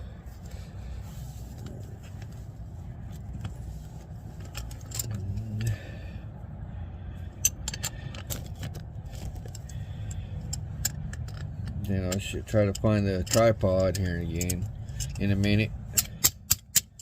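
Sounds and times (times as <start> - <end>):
steady low hum: 0.0 - 17.0
tools clinking on metal: 9.4 - 17.0.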